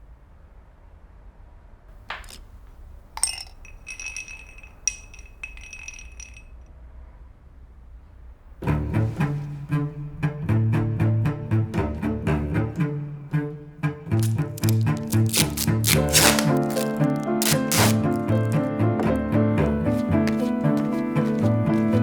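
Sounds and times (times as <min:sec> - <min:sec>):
glass clinking and ringing: 0:02.1 - 0:06.5
plucked double bass music: 0:08.6 - 0:22.0.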